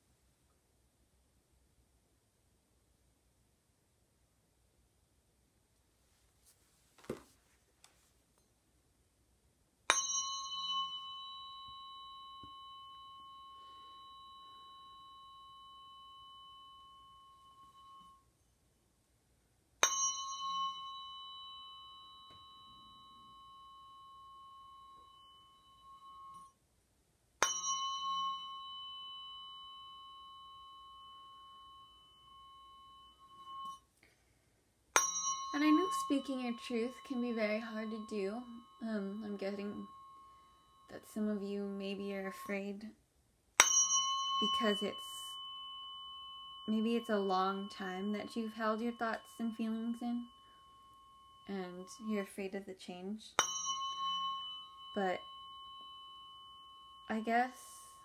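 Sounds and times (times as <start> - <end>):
tuning fork ringing: 9.9 - 18.6, 19.8 - 26.7, 27.4 - 43.0, 43.6 - 58.0.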